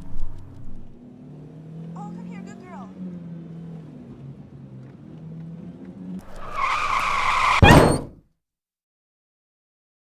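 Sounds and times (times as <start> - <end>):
tyres screeching: 6.2 - 8.2
loud car crash: 6.3 - 8.2.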